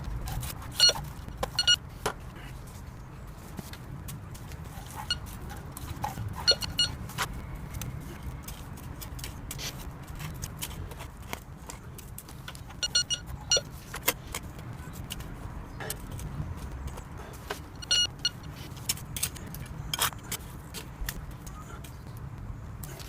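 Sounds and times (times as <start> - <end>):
metal detector beeping: 0.8 - 1.8, 5.0 - 5.4, 6.4 - 7.2, 12.8 - 13.7, 17.8 - 18.6.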